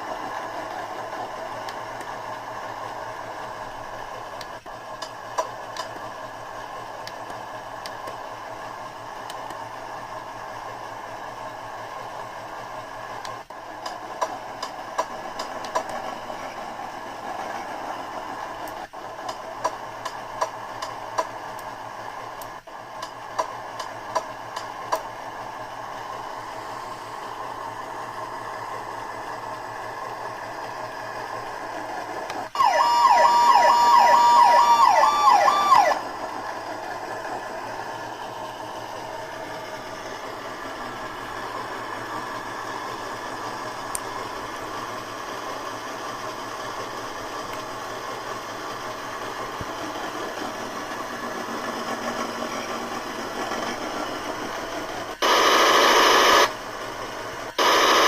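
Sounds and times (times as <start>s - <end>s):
electronic toy siren warbling: 32.6s - 36.1s.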